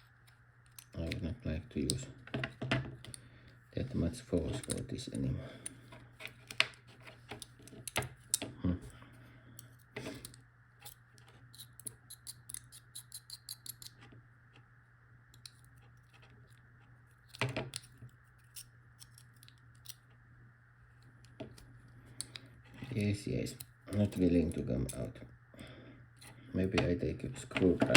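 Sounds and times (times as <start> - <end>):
steady low hum: 0.0 - 27.9
metal padlock parts clicking: 9.6 - 14.1, 15.3 - 16.3, 17.2 - 20.1.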